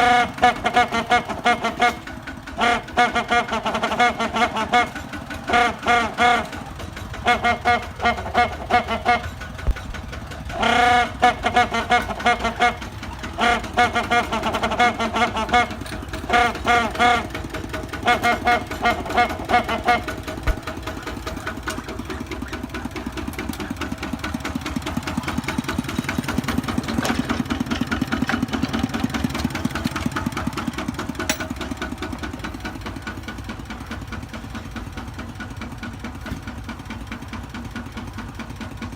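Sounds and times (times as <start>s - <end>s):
tractor horn blasts: 0.0s - 37.6s
tractor engine running: 0.0s - 38.9s.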